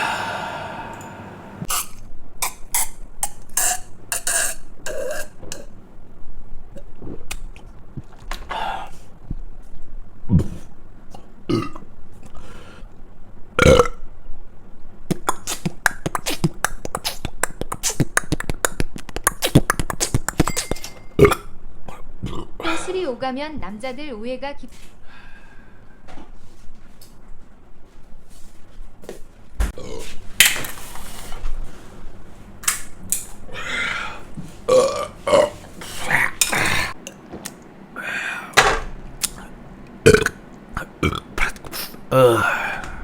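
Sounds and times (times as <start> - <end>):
man burping: 21.2 - 22.9, 39.2 - 43.0.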